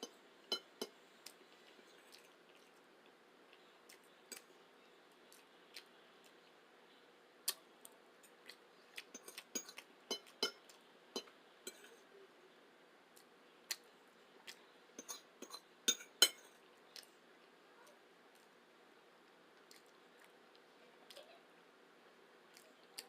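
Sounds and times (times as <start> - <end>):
eating sounds: 19.6 - 21.3.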